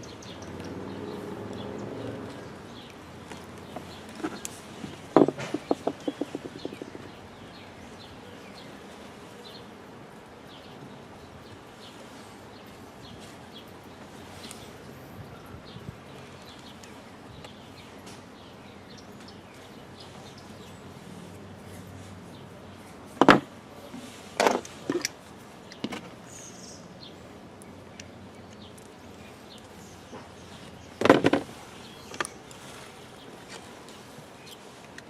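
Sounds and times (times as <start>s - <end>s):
parts knocking and clattering: 3.7s - 7.0s, 23.2s - 23.5s, 24.4s - 26.1s, 31.0s - 31.5s.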